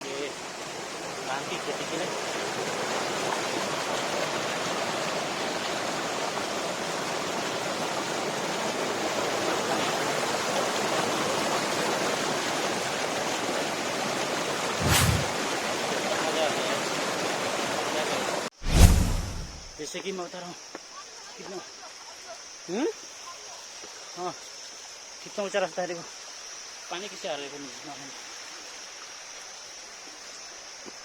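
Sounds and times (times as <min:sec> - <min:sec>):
rushing water: 0:00.0 - 0:19.7
loud thump: 0:18.6 - 0:19.7.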